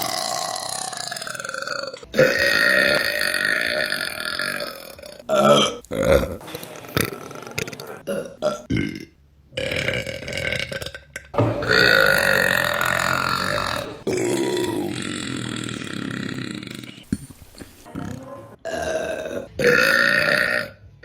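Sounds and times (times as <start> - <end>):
women burping: 0.0 - 6.4, 11.6 - 20.8.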